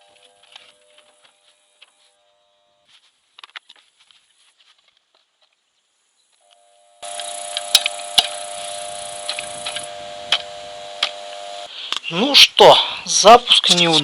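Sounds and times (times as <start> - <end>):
pump humming: 6.4 - 11.7
sharp clicks: 7.1 - 8.5.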